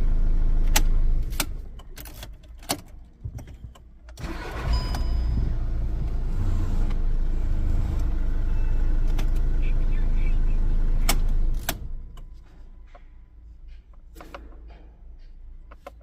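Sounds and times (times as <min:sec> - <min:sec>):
car engine starting and idling: 0:00.0 - 0:13.0
ignition key clicks: 0:11.0 - 0:12.3.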